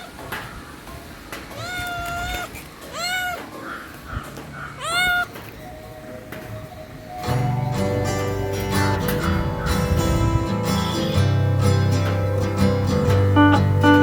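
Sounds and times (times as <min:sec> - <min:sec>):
kitten meowing: 0:01.5 - 0:03.6, 0:04.8 - 0:05.4.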